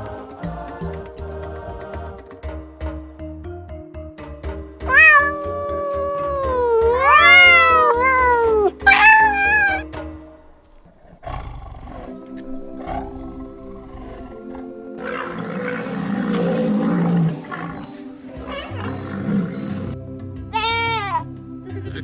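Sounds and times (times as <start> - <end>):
background music: 0.0 - 22.0
cat meowing: 4.9 - 9.8.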